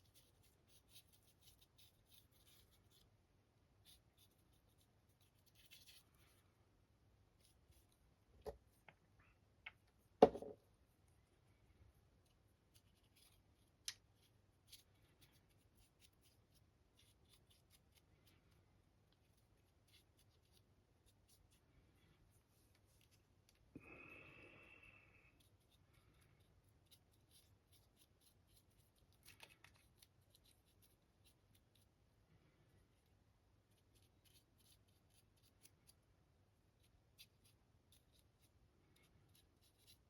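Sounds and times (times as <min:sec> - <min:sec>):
small clicks and taps of handling: 0:13.8 - 0:14.1, 0:29.2 - 0:30.1.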